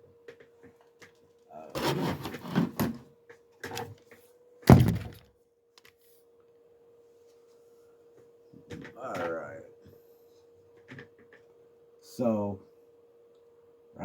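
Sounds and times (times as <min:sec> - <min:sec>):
faint steady hum: 0:00.0 - 0:14.0
rustling handling noise: 0:03.7 - 0:05.3
loud sharp thump: 0:04.7 - 0:05.2.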